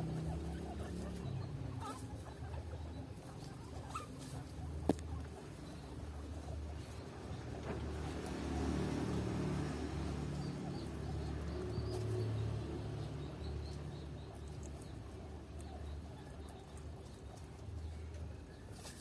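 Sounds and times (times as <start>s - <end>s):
doves cooing: 0.0s - 6.8s
small birds chirping: 0.0s - 19.0s.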